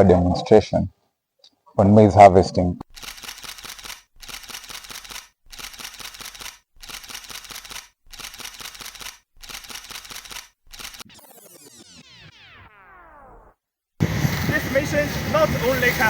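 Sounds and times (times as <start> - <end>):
camera shutter clicking: 2.9 - 11.0
falling synth sweep: 11.0 - 13.6.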